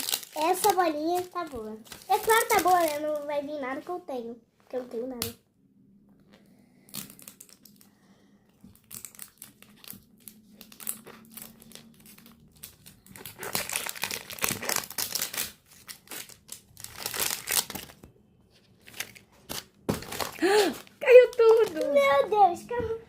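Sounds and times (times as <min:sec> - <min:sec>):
plastic packaging crinkling and tearing: 0:00.0 - 0:03.4, 0:06.9 - 0:07.9, 0:08.7 - 0:18.1, 0:18.7 - 0:22.3.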